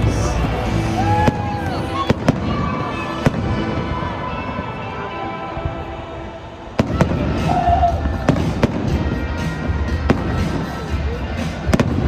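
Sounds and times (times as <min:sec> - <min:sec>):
music playing: 0:00.0 - 0:12.0
fireworks bangs and booms: 0:01.1 - 0:03.6, 0:06.8 - 0:12.0.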